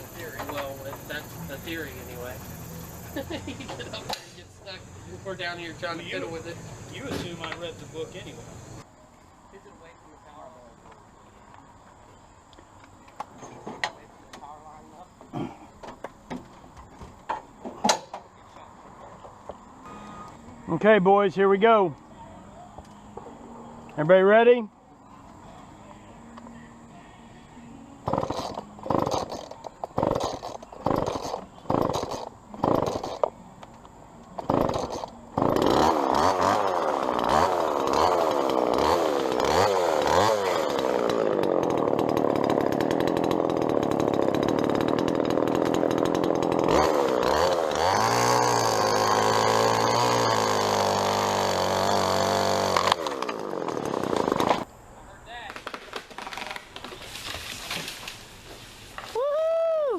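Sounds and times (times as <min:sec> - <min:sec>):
chainsaw revving and cutting: 0:28.0 - 0:33.3, 0:34.4 - 0:54.7.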